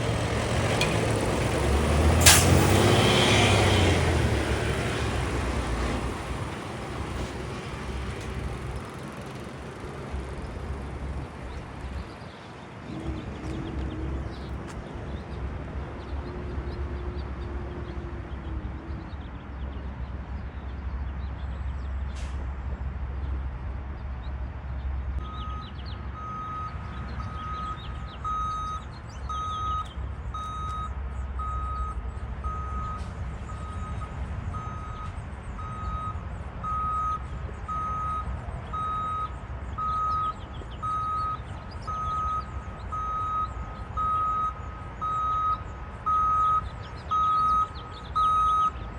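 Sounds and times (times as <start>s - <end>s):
diesel engine low rumble: 0.0s - 48.9s
backup alarm beeping: 25.2s - 48.8s.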